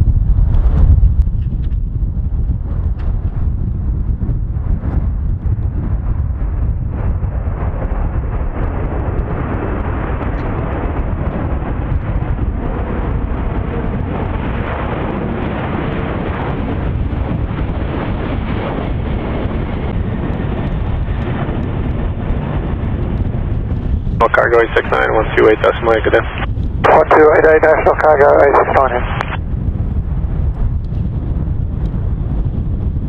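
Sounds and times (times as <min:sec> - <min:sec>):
jet engines roaring at takeoff: 0:00.0 - 0:33.0.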